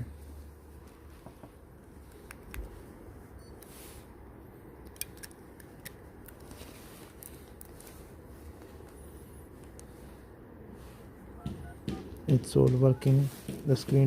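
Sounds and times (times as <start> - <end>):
low steady hum: 0.0 - 14.0
smartphone parts clicking: 4.8 - 6.4.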